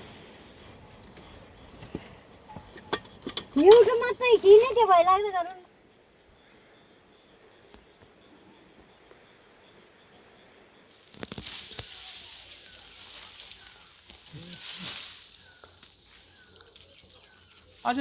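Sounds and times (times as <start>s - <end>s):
high-pitched insect chorus: 10.8s - 18.0s.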